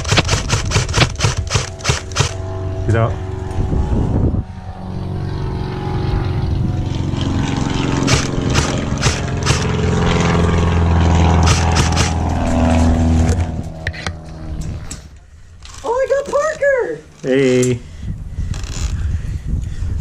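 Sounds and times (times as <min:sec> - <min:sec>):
airsoft rifle shots: 0:00.0 - 0:02.4, 0:08.0 - 0:09.9, 0:11.4 - 0:12.3
motor drone: 0:00.0 - 0:15.8.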